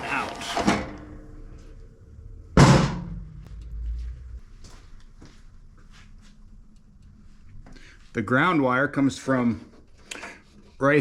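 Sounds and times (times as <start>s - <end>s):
heavy thud: 2.6s - 3.6s.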